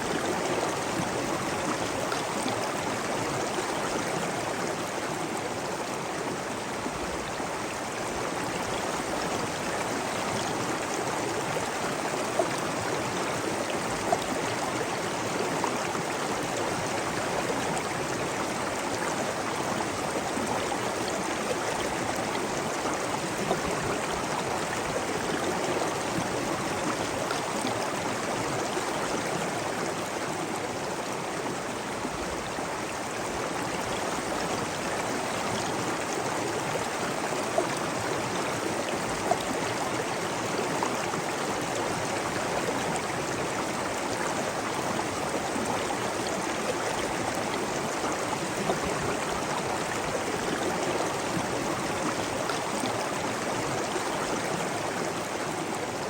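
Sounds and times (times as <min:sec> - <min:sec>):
rushing flowing water: 0:00.0 - 0:56.0.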